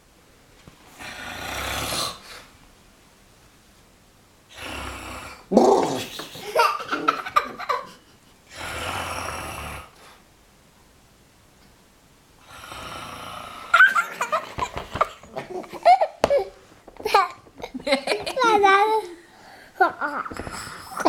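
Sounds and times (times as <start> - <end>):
adult pretend snoring: 0.9 - 2.5, 4.5 - 6.2, 8.5 - 10.2, 12.4 - 14.0
young child laughing: 5.9 - 8.2, 13.8 - 19.0, 19.8 - 21.0.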